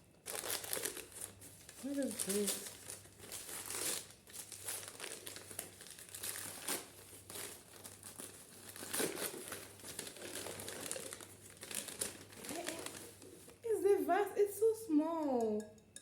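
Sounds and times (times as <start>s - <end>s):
packaging crinkling and rustling: 0.2s - 13.7s.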